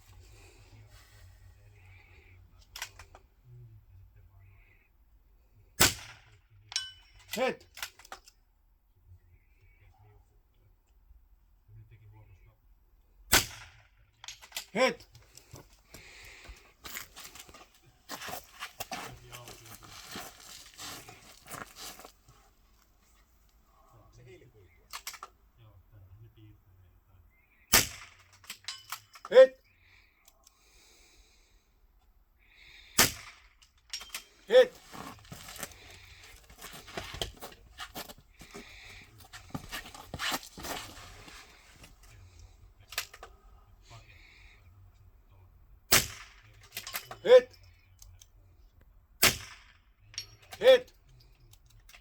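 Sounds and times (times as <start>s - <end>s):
clothing and gear rustling: 15.2s - 23.6s, 34.2s - 43.4s.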